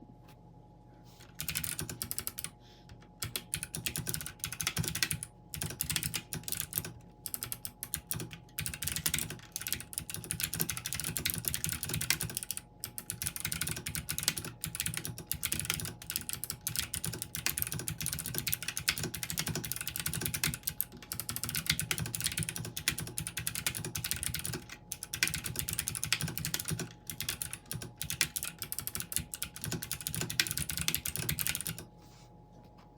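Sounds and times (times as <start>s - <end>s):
fast typing on clicky keyboard: 1.4s - 2.5s, 3.2s - 31.8s.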